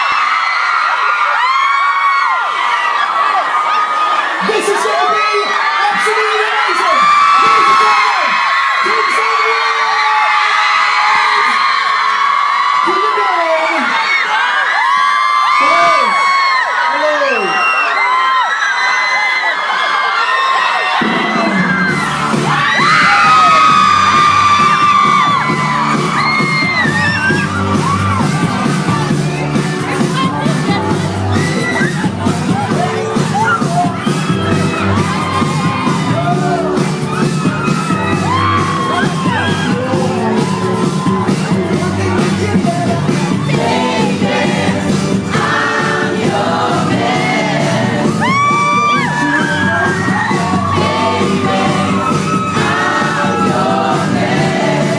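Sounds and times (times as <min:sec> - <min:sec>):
children whooping and screaming: 0:00.0 - 0:43.8, 0:47.9 - 0:54.1
crowd cheering: 0:00.0 - 0:54.9
music with bass line: 0:21.0 - 0:54.9.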